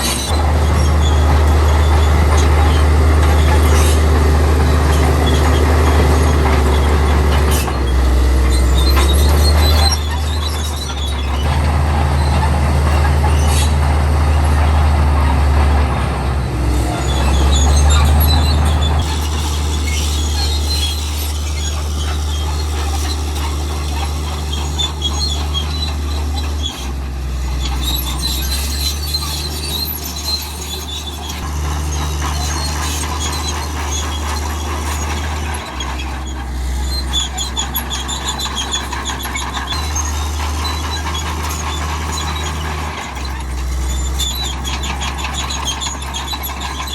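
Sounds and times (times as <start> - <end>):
bulldozer diesel engine running: 0.0 - 46.9
metal tracks squealing: 0.0 - 46.9.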